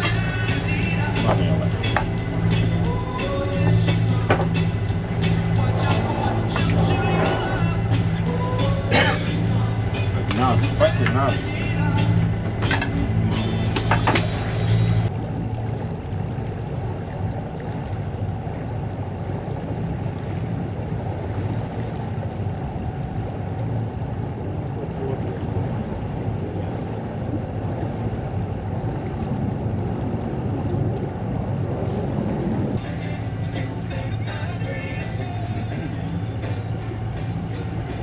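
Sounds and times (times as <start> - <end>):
music: 0.0 - 15.1, 32.8 - 38.0
water rushing along hull: 0.0 - 38.0
wind buffeting microphone: 0.0 - 38.0.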